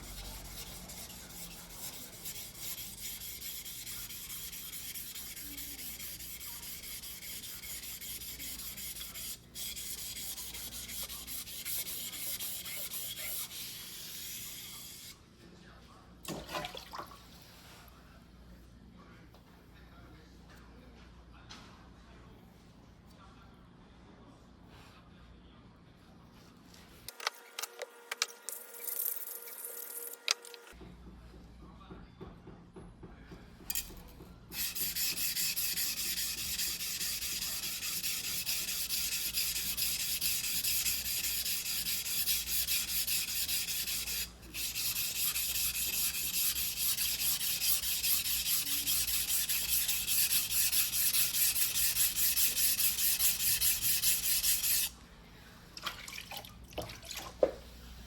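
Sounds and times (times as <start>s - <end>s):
blade scraping on whetstone: 0.0s - 15.1s, 33.7s - 54.9s.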